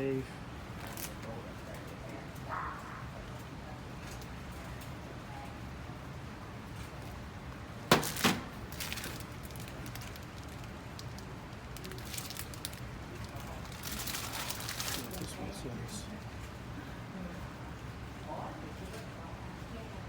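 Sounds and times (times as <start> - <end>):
steady low hum: 0.0 - 20.0
packaging rustling and clicks: 7.9 - 15.3.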